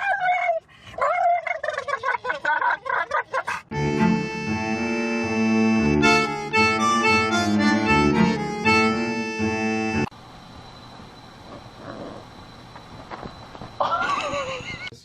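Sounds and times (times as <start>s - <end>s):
harmonica-like reed chords: 3.7s - 10.1s.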